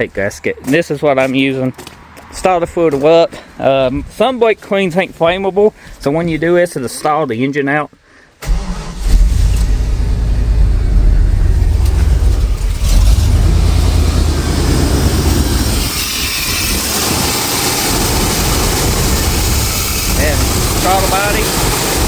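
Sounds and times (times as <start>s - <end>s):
car engine idling roughly: 9.4s - 22.0s
steady hiss: 15.0s - 22.0s.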